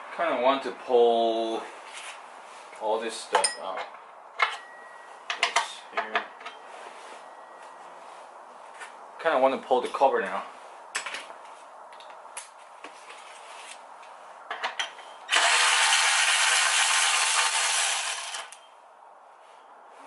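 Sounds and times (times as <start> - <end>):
cordless power tool running: 15.3 - 18.6.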